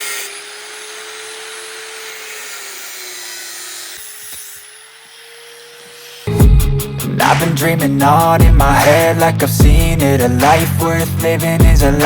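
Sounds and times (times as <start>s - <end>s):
small power tool whining: 0.0s - 6.4s.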